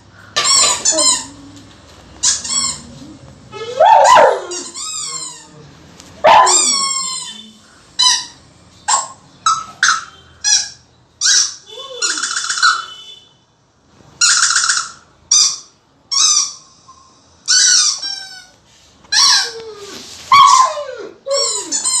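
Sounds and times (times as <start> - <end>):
squeaky dog toy squeaking: 0.4 - 1.4, 2.2 - 5.6, 6.2 - 13.1, 14.2 - 16.7, 17.4 - 18.5, 19.1 - 22.0
dog howling: 3.5 - 4.7, 6.2 - 6.8, 19.4 - 21.7.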